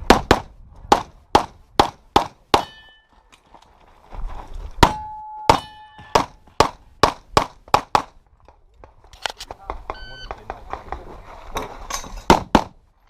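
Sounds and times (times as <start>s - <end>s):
steel targets ringing: 2.6s - 3.1s, 4.8s - 6.2s.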